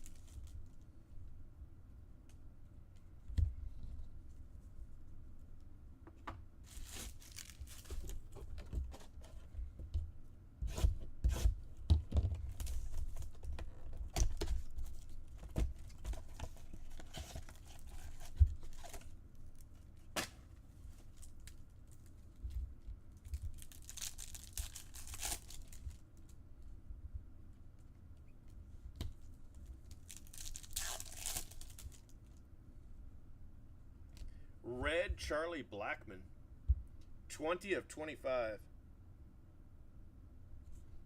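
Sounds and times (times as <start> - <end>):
wrappers tearing and crinkling: 0.0 - 0.6, 6.6 - 8.4, 23.2 - 26.0, 29.8 - 32.2
cards being shuffled: 29.9 - 32.1.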